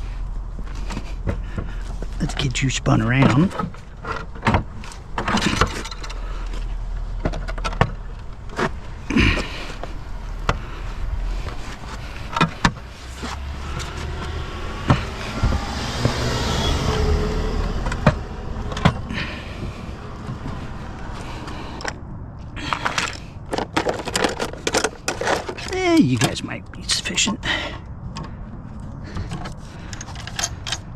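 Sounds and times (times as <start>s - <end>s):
low vehicle rumble: 0.0s - 30.9s
scrap items knocking and rattling: 3.1s - 16.3s, 22.6s - 26.4s
vehicle whoosh: 9.8s - 22.3s.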